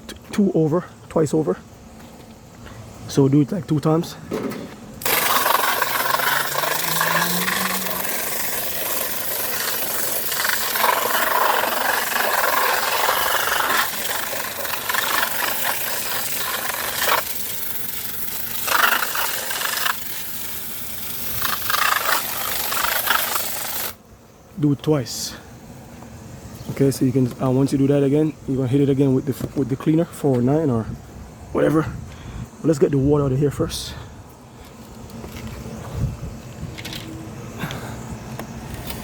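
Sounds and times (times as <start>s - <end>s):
hose spraying water: 5.0s - 24.0s.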